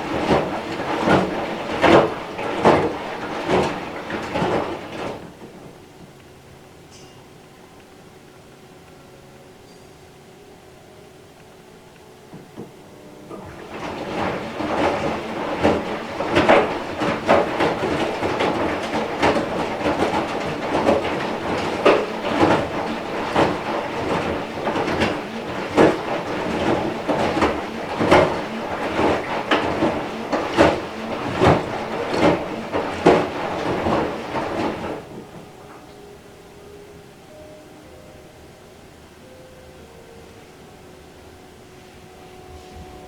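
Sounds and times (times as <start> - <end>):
laundry knocking in drum: 0.0 - 5.7, 12.4 - 35.8
washing machine drum rumbling: 0.0 - 6.1, 12.3 - 36.2.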